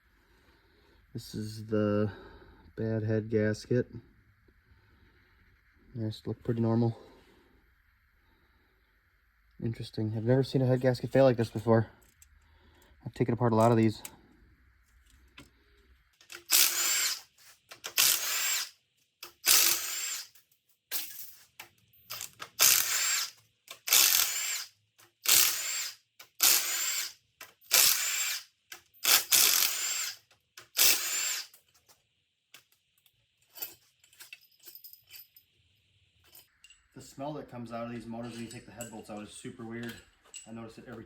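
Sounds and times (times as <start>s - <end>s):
power tool bursts: 16.3s - 20.4s, 22.1s - 31.5s.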